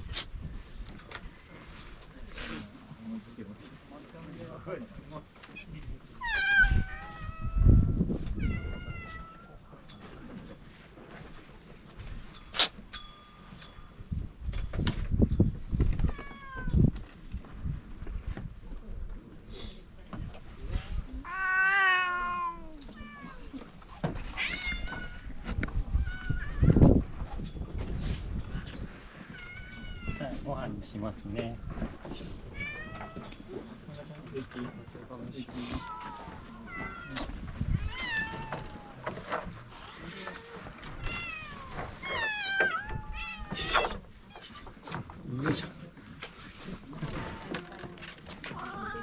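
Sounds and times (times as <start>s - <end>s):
cat meowing: 6.2s - 9.6s, 16.1s - 16.9s, 21.2s - 23.6s, 24.3s - 26.9s, 29.3s - 30.4s, 32.5s - 33.3s, 35.7s - 39.1s, 40.4s - 44.6s.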